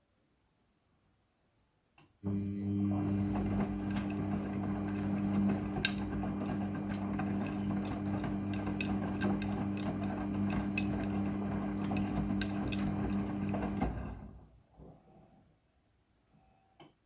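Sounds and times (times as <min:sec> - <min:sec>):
washing machine motor hum: 0:02.2 - 0:14.5.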